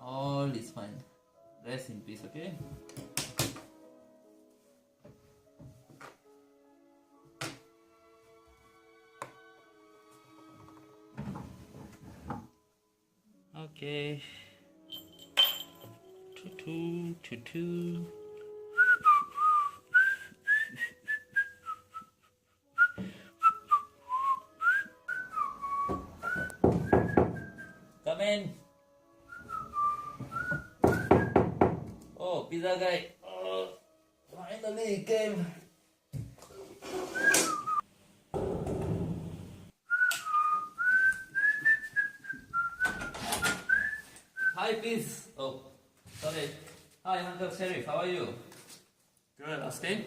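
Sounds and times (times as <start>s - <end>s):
person whistling a tune: 18.7s - 27.8s, 29.3s - 31.5s, 37.0s - 37.9s, 39.9s - 44.6s
shuffling noise: 46.0s - 47.0s.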